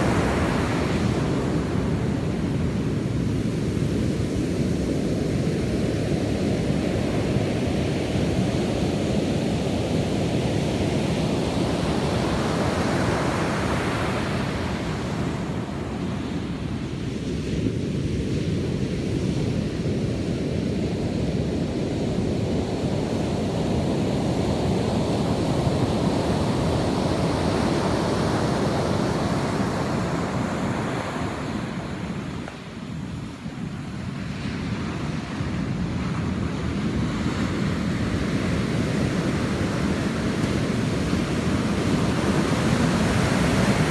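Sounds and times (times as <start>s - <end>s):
surf washing onto beach: 24.2s - 43.9s.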